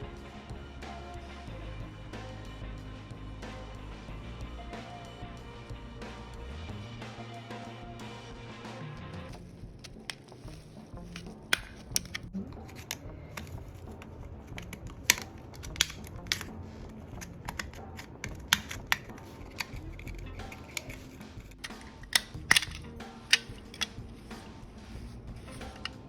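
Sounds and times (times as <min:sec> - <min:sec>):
sharp clicks and snaps: 0:11.2 - 0:16.5, 0:17.1 - 0:24.0.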